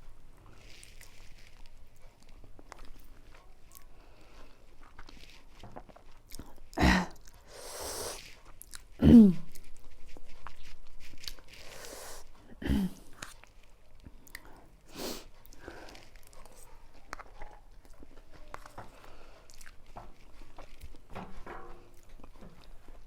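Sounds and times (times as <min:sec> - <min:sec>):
person chewing noodles: 0:00.1 - 0:21.2
throaty vocal sound: 0:06.8 - 0:07.2, 0:09.0 - 0:09.5, 0:12.0 - 0:13.1.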